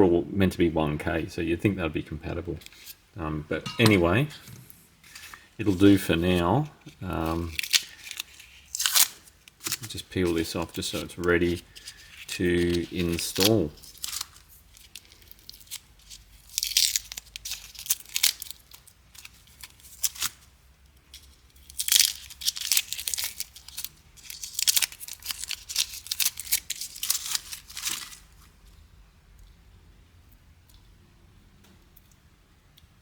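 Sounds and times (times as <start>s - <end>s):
tape being peeled off: 2.6s - 3.0s, 4.4s - 20.5s, 21.1s - 28.5s.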